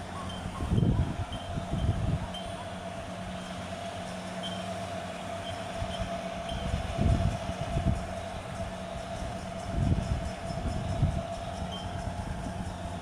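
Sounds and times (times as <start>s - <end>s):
low rumbling surges: 0.0s - 13.0s
steady mechanical hum: 0.0s - 13.0s
thin high whine: 0.0s - 13.0s.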